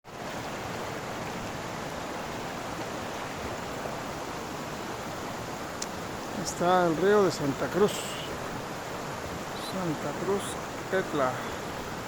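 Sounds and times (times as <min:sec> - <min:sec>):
river water rushing: 0:00.1 - 0:12.0.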